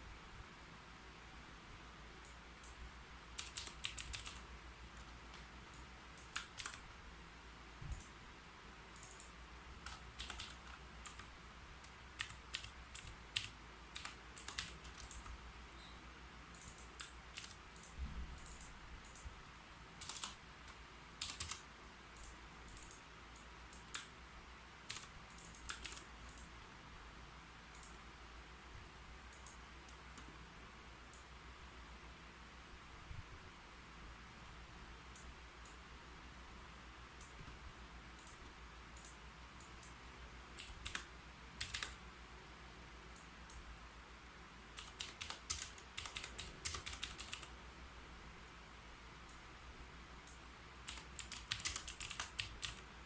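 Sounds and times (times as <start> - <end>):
keyboard typing: 2.2 - 6.9, 8.9 - 15.4, 16.5 - 19.3, 20.0 - 24.1, 24.8 - 26.6, 38.2 - 42.0, 44.8 - 47.6, 50.3 - 52.9.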